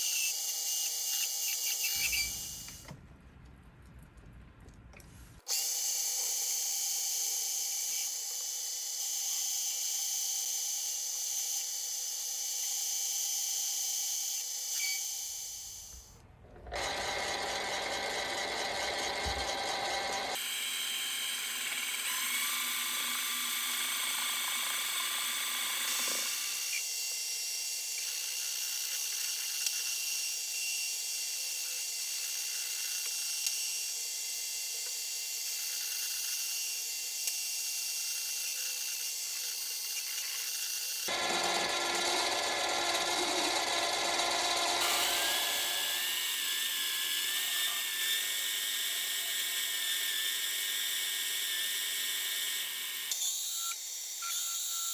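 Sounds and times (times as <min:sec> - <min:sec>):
metal lathe motor whine: 0:16.8 - 0:26.8, 0:40.9 - 0:53.2.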